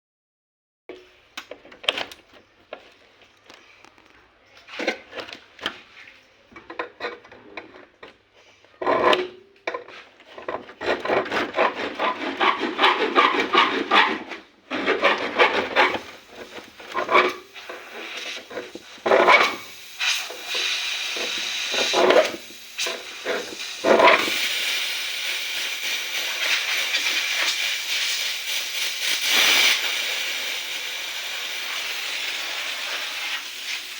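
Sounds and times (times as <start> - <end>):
scraping and rubbing on hard parts: 3.3 - 24.4
gas hissing from hose: 15.8 - 33.9.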